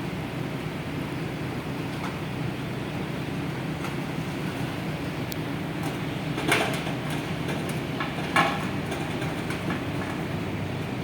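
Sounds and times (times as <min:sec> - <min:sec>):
heavy diesel machinery running: 0:00.0 - 0:11.0.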